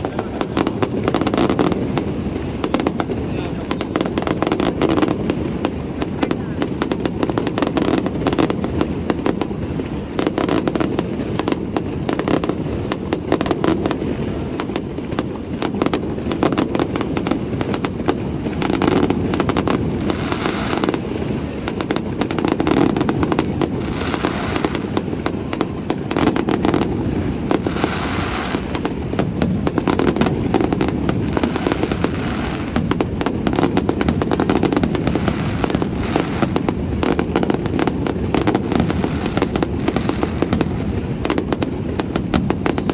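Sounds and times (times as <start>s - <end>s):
fireworks bangs and crackling: 0.0s - 42.9s.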